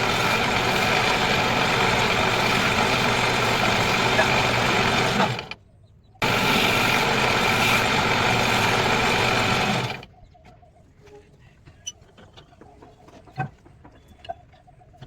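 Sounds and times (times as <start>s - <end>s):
wood lathe running: 0.0s - 5.6s, 6.2s - 10.1s.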